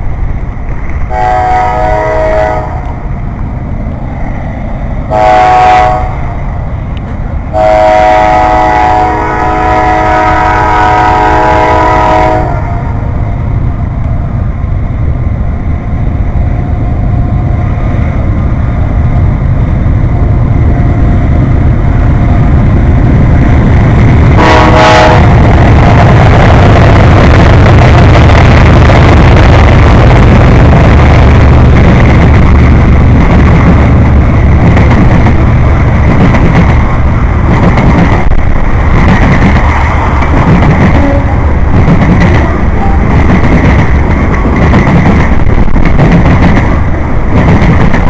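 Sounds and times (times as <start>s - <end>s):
freight train rumbling past: 0.0s - 48.0s
locomotive horn blast: 1.1s - 2.9s, 5.1s - 6.2s, 7.5s - 13.0s, 24.4s - 25.5s, 40.9s - 41.5s.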